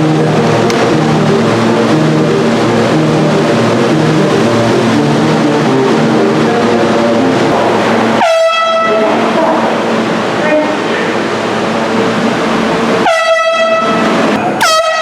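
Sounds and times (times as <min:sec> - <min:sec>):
air horn blast: 0:00.0 - 0:09.8, 0:13.0 - 0:15.0
subway train running: 0:00.0 - 0:15.0.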